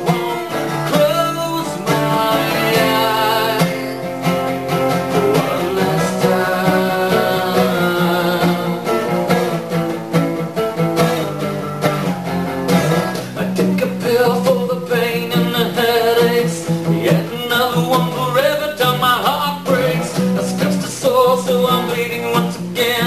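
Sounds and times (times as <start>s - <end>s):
person singing long held notes: 0.0s - 4.0s, 5.2s - 9.6s
acoustic guitar strumming: 0.0s - 23.0s.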